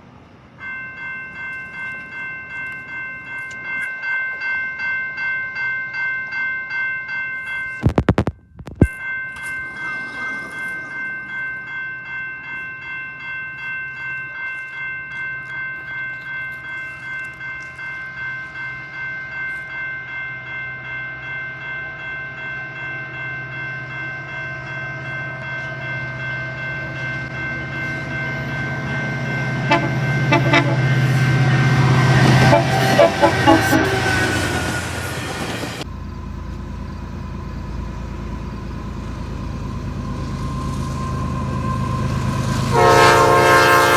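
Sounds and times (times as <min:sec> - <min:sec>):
train low rumble: 0:15.4 - 0:43.9
locomotive air horn: 0:29.7 - 0:31.1, 0:31.8 - 0:35.0, 0:42.7 - 0:43.9.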